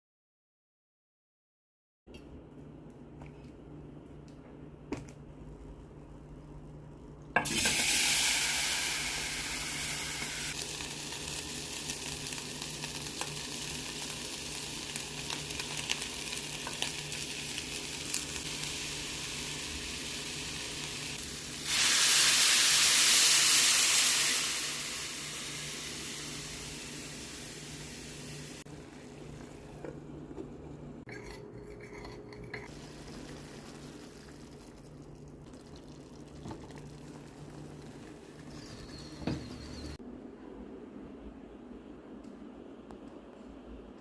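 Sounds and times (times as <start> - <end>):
food sizzling in hot pan: 7.4 - 29.5, 32.7 - 34.6.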